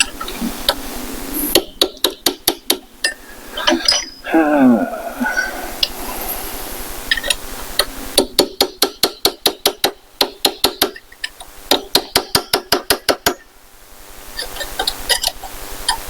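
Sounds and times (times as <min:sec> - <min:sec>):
hammer tapping chisel on metal: 0:08.2 - 0:13.4.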